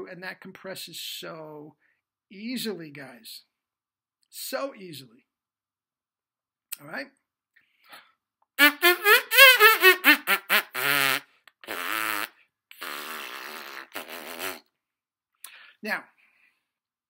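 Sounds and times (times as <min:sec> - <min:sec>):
trumpet wavering held notes: 0:08.6 - 0:10.8
trumpet short sliding notes: 0:08.6 - 0:11.2.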